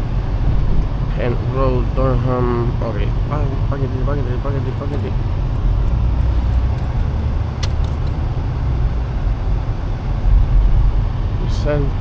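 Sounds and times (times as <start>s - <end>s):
engine and road rumble: 0.0s - 12.0s
short clicks: 6.5s - 8.2s.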